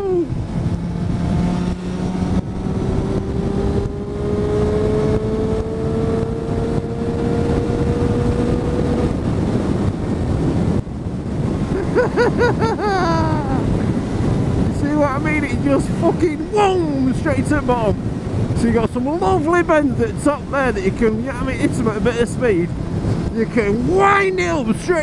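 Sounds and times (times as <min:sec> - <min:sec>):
wind noise: 0:00.0 - 0:25.0
motorcycle engine revving up: 0:00.4 - 0:09.4.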